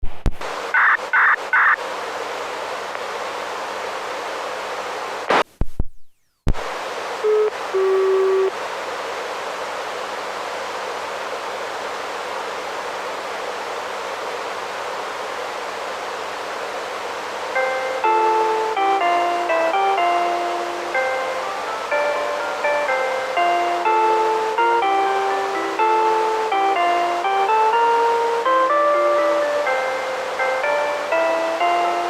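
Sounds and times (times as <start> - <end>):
radio receiver hiss: 0.0 - 28.8
short high beeps: 7.2 - 8.5
short low tones: 7.2 - 8.5.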